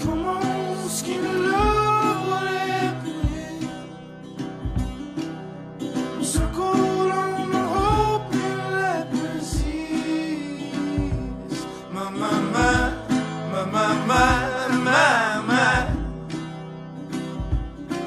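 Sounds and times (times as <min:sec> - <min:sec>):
person singing: 0:00.0 - 0:04.0, 0:06.2 - 0:16.3
plucked acoustic guitar: 0:00.0 - 0:18.0.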